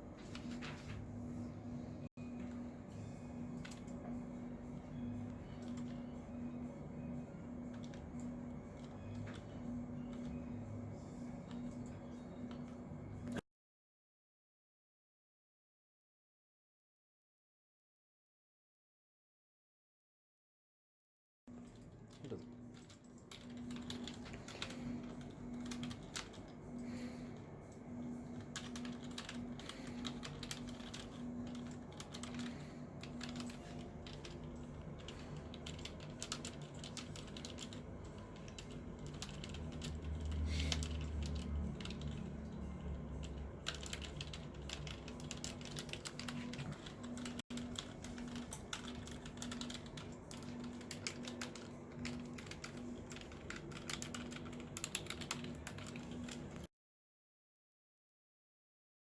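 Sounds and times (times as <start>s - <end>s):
keyboard typing: 3.2s - 13.4s, 21.5s - 56.7s.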